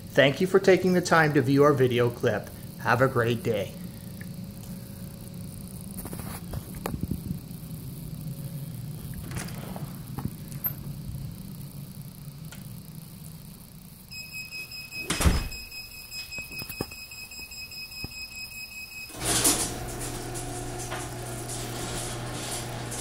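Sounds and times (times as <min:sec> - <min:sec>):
garage door opener rumbling: 0:19.1 - 0:23.0.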